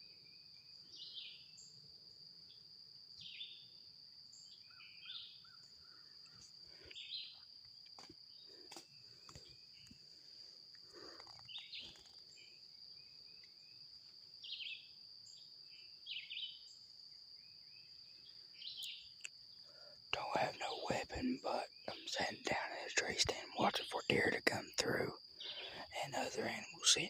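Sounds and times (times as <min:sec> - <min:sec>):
high-pitched insect trill: 0:00.0 - 0:27.0
bird chirps: 0:00.9 - 0:01.8, 0:04.3 - 0:07.4, 0:11.3 - 0:13.8, 0:14.4 - 0:16.8, 0:17.4 - 0:19.8, 0:25.4 - 0:27.0.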